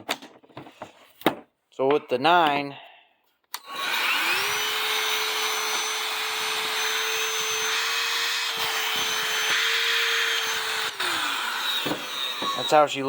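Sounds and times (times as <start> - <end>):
hand vacuum running: 3.6 - 13.0.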